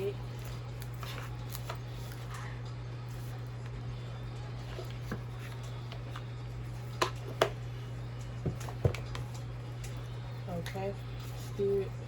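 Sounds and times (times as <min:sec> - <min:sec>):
steady low hum: 0:00.0 - 0:12.0
cards being shuffled: 0:00.1 - 0:02.4, 0:04.6 - 0:07.6.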